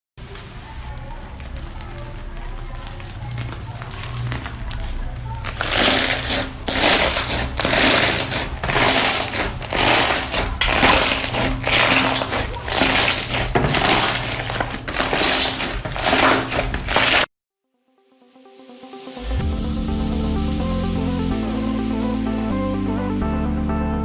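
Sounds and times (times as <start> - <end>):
slime squishing: 0.3 - 17.3.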